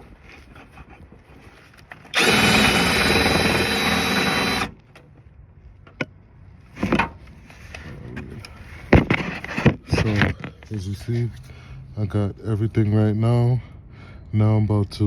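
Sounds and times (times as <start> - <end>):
cordless power tool running: 2.1 - 4.8.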